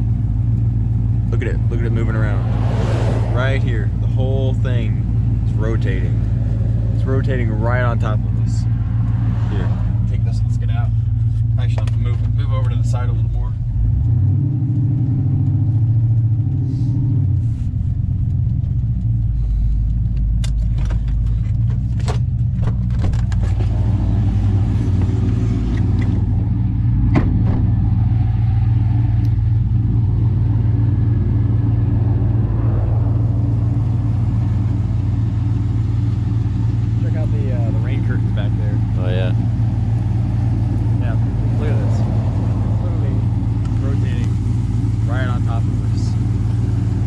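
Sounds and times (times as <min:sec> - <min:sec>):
vehicle engine and road noise: 0:00.0 - 0:47.0
sharp clicks and knocks: 0:19.8 - 0:23.8.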